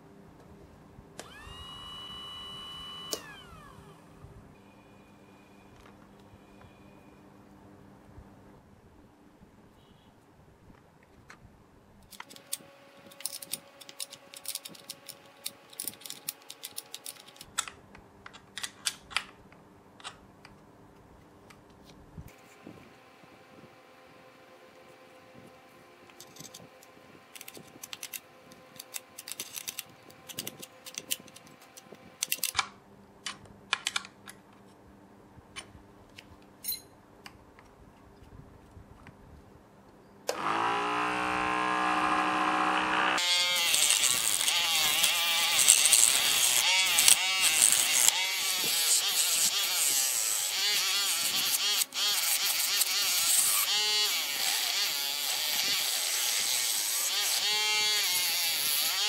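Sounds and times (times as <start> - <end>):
small motor humming: 1.2 - 4.3, 40.3 - 59.0.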